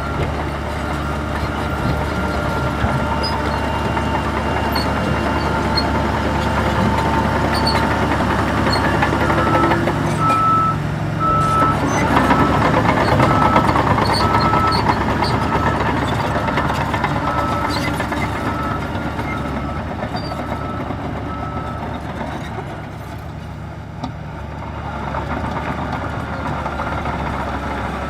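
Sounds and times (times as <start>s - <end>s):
reversing alarm beeping: 0.0s - 21.9s
heavy diesel machinery running: 0.0s - 28.0s.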